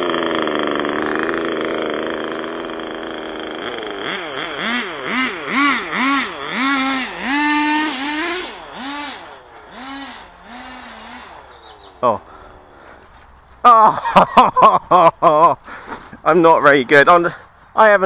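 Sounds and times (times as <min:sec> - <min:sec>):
small engine revving: 0:00.0 - 0:13.2.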